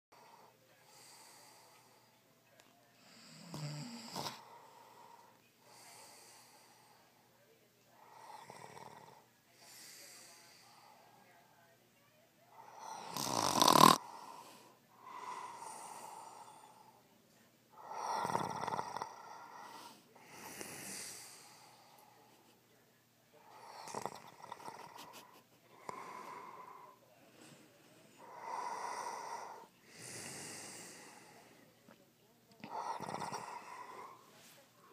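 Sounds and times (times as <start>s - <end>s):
person snoring: 3.0s - 6.6s, 12.6s - 16.9s, 17.8s - 22.0s, 23.4s - 27.0s, 28.2s - 31.5s, 32.6s - 34.3s
loud snoring with rattle: 3.2s - 4.5s, 12.8s - 14.2s, 17.8s - 19.6s, 23.5s - 25.0s, 32.6s - 34.2s.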